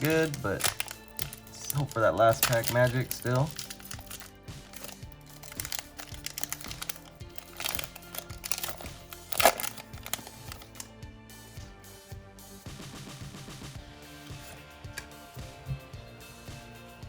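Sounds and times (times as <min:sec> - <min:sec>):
foil wrapper crinkling: 0:00.0 - 0:10.9
background music: 0:00.0 - 0:17.0.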